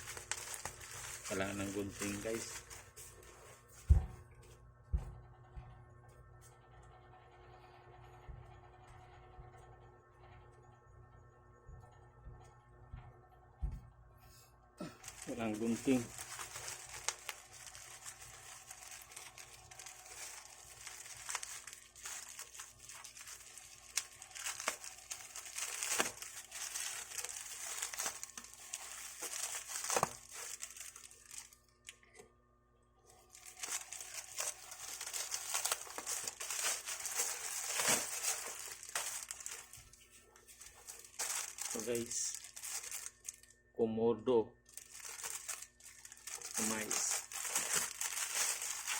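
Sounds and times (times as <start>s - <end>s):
plastic packaging tearing: 0.0s - 3.2s, 14.8s - 32.0s, 33.2s - 43.5s, 44.7s - 48.9s
plastic packaging crinkling: 0.0s - 3.9s, 14.8s - 32.2s, 33.1s - 43.6s, 44.6s - 48.9s.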